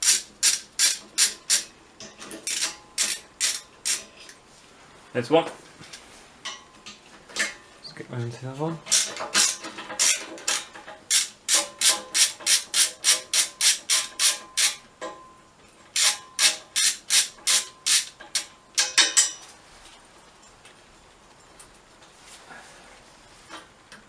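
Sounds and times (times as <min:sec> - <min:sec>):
ratchet wrench clicking: 0:00.0 - 0:01.7, 0:02.4 - 0:04.1, 0:08.9 - 0:14.8, 0:16.0 - 0:18.9.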